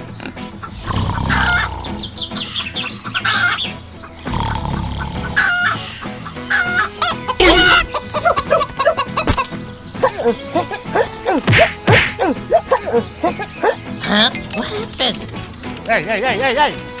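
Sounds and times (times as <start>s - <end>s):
chickens clucking: 0.0s - 17.0s
rooster crowing: 1.2s - 2.0s, 5.3s - 9.2s.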